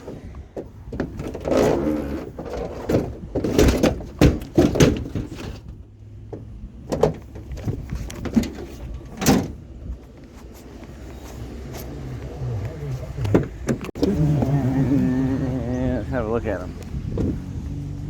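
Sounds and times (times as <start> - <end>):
knocks and clunks: 0.0 - 14.6, 16.7 - 17.6.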